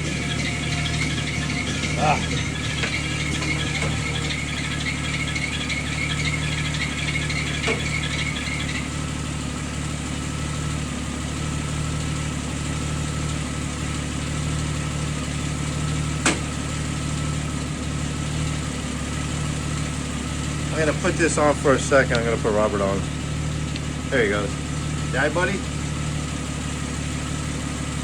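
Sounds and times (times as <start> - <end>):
warbling high squeak: 0.0 - 9.6
vehicle engine idling: 0.0 - 28.0.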